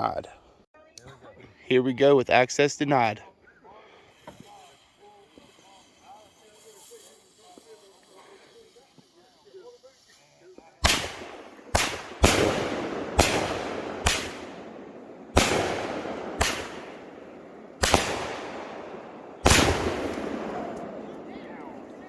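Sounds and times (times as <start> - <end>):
firework bangs with rumble: 10.8 - 22.0.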